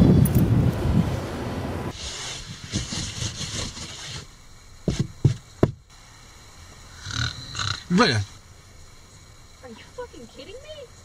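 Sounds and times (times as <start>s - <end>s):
rough hissing scraping: 1.9s - 11.0s
short sharp knocks: 4.9s - 5.8s.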